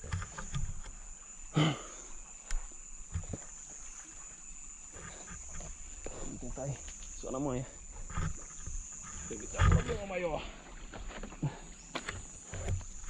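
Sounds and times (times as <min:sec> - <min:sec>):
high-pitched insect drone: 0:00.0 - 0:13.0
short grunt: 0:01.5 - 0:02.0.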